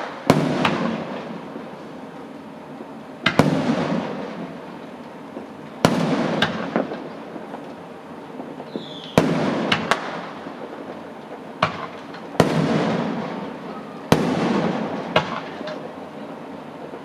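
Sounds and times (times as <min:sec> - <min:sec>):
fireworks bangs: 0:00.0 - 0:17.0
falling firework whistle: 0:08.6 - 0:10.3, 0:12.4 - 0:15.9.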